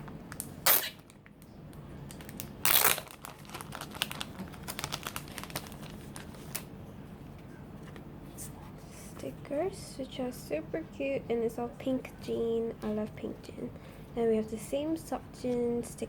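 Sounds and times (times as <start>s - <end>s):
packaging crinkling: 2.1s - 6.7s
packaging ripping: 2.1s - 6.7s.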